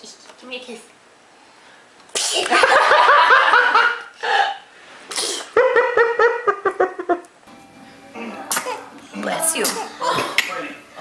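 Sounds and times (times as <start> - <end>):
child sneezing: 2.1 - 2.5, 4.4 - 5.6, 8.2 - 9.0.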